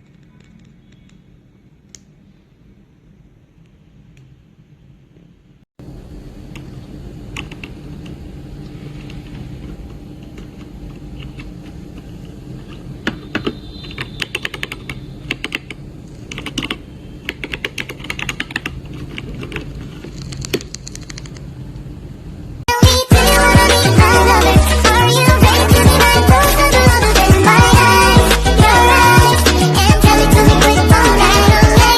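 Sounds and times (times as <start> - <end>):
low steady hum: 0.0 - 14.2
mechanical keyboard keys clacking: 7.3 - 8.2, 13.0 - 21.5.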